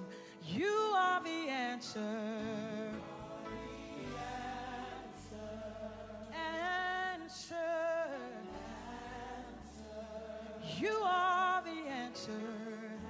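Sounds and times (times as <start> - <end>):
gospel singing: 0.0 - 13.0
low accompaniment: 3.0 - 7.6.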